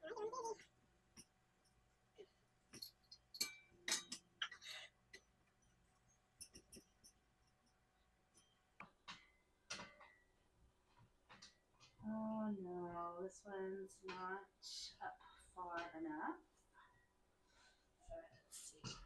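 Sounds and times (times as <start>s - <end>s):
hard parts clicking and clinking: 2.7s - 4.3s.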